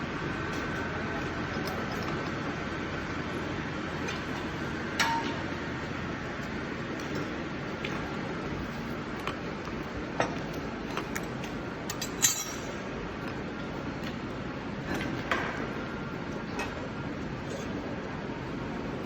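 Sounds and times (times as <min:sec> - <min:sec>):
steady background noise: 0:00.0 - 0:19.0.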